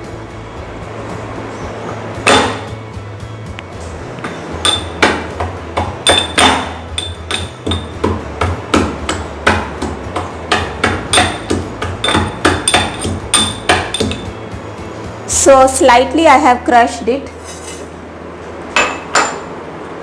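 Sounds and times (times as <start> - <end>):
ginger being pounded: 2.2 - 2.8, 4.2 - 14.4.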